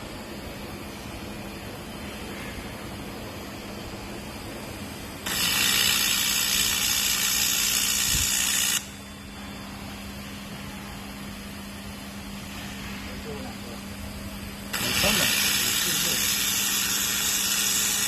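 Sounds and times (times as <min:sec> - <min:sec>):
low machine hum: 0:00.0 - 0:18.0
laser welding hiss: 0:05.3 - 0:08.9, 0:14.7 - 0:18.0.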